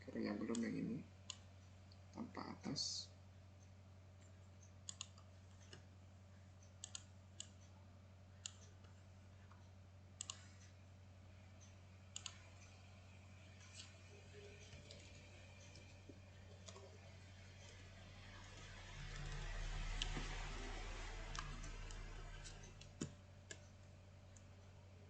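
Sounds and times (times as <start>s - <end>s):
faint low hum: 0.0s - 25.0s
computer mouse clicking: 4.6s - 5.9s, 6.6s - 7.7s, 8.4s - 10.7s, 11.6s - 12.8s, 14.6s - 17.8s, 18.5s - 24.5s.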